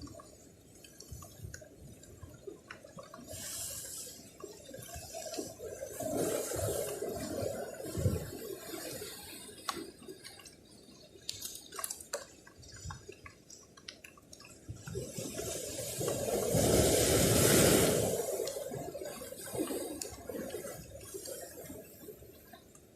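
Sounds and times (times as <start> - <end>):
water trickling among rocks: 0.0 - 22.9
wave washing over rocks: 14.9 - 21.4.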